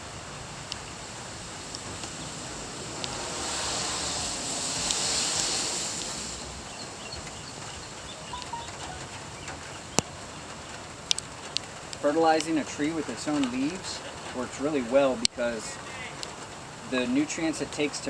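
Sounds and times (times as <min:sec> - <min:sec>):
sharp drip ticks: 0:00.0 - 0:18.0
steady rain falling: 0:00.0 - 0:18.0.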